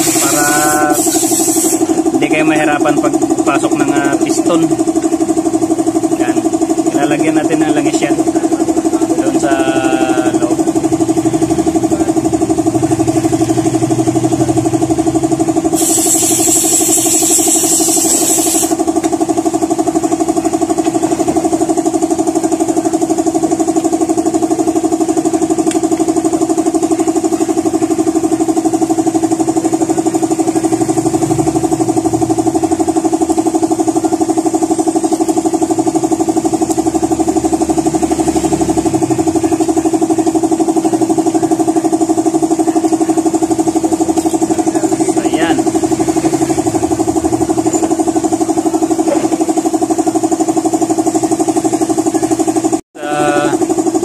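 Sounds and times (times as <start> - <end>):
hiss: 0.0 - 1.8, 15.8 - 18.8
motor humming: 0.0 - 54.0.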